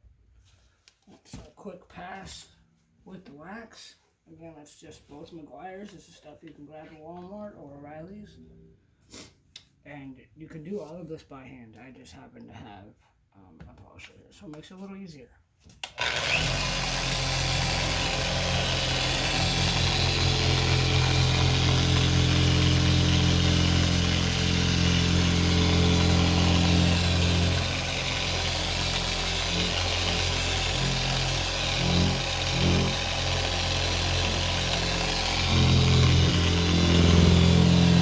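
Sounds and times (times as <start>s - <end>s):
electric polisher humming: 15.8s - 38.0s.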